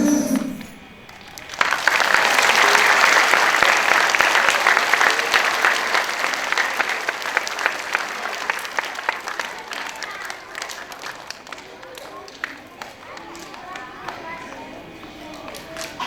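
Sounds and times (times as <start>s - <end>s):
audience applause: 0.6s - 16.0s.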